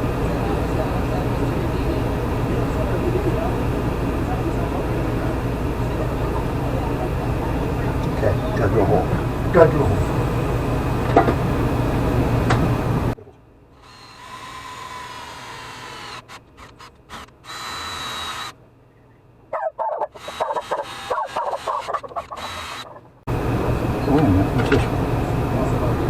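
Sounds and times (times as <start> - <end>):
loud steady noise: 0.0 - 13.2, 22.7 - 26.0
electric drill whining: 13.8 - 18.6, 20.2 - 22.9.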